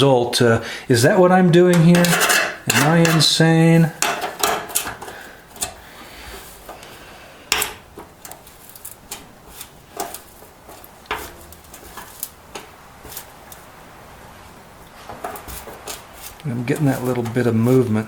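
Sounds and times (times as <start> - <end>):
metal hand tools clinking: 1.7 - 5.8.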